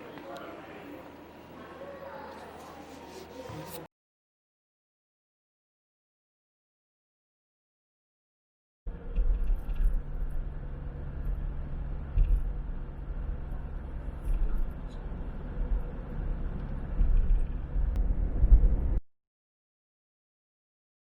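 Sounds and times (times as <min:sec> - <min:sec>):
faint hum: 0:08.9 - 0:19.0
road and engine rumble: 0:08.9 - 0:19.0.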